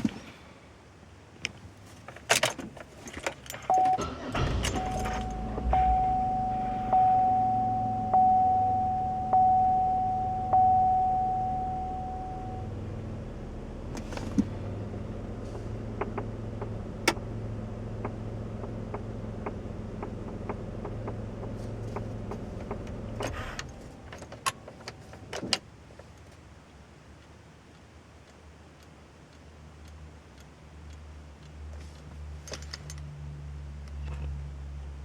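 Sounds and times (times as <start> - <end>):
car running hum: 1.4 - 26.9
light tapping from dashboard: 1.4 - 33.1.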